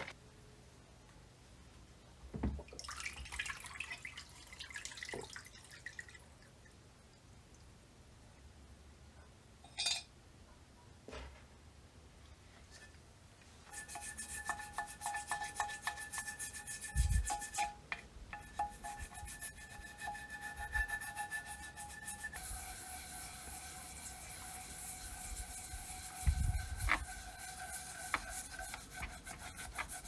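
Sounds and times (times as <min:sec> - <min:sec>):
hand tool scraping metal: 0:13.7 - 0:30.0.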